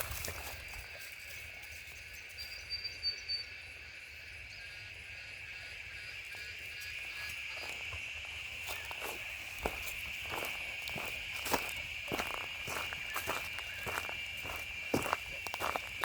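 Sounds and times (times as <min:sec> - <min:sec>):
insects chirping: 0:00.0 - 0:16.0.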